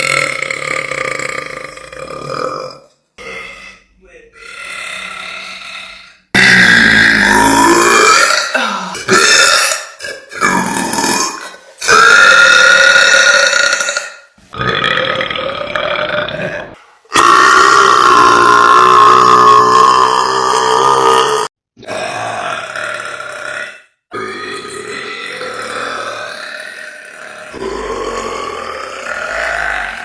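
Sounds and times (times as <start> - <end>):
woman burping loudly: 6.3 - 30.0.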